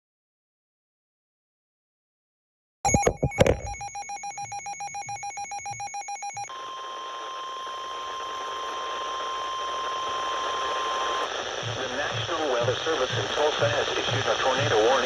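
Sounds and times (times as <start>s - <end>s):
rapid electronic beeping: 2.9s - 6.5s
steady warning alarm tone: 2.9s - 11.3s
radio hiss: 8.2s - 15.0s.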